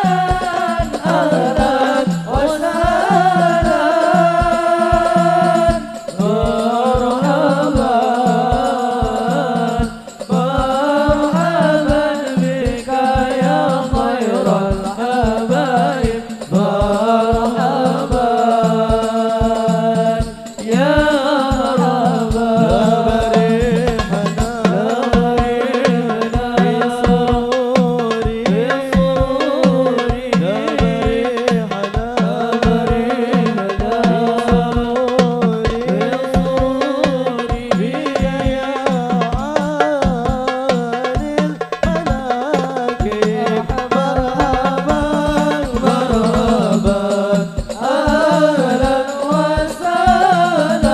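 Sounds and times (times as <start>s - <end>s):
frame drums beating: 0.0s - 50.9s
group devotional singing: 0.0s - 50.9s.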